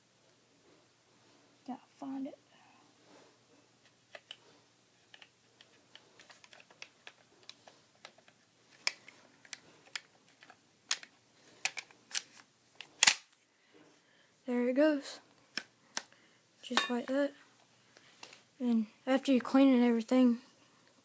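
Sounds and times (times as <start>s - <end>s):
metallic clicks of shotgun parts: 10.9s - 13.4s.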